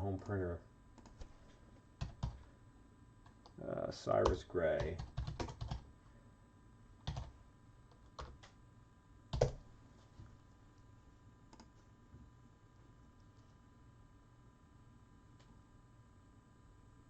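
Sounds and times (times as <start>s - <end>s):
computer keyboard taps: 9.4s - 9.6s.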